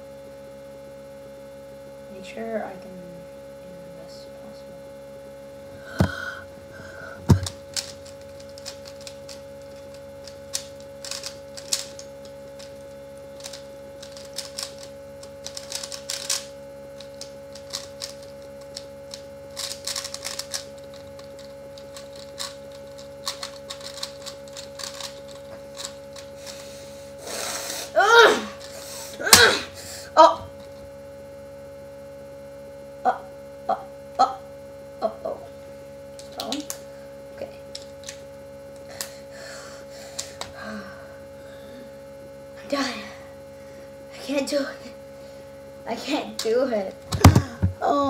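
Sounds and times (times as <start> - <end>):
steady hum: 0.0 - 48.0
puzzle cube layers clicking: 7.4 - 12.7, 13.4 - 22.6, 23.2 - 26.0.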